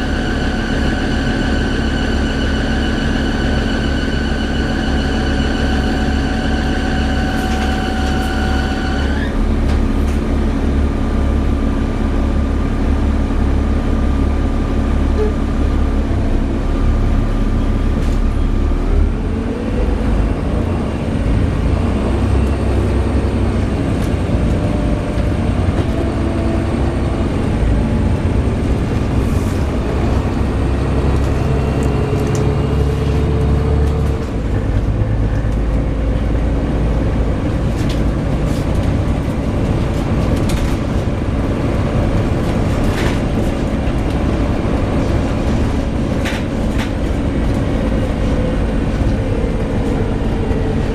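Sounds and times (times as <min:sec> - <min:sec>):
high-pitched bus screech: 0:00.0 - 0:09.4
bus engine drone: 0:00.0 - 0:50.9.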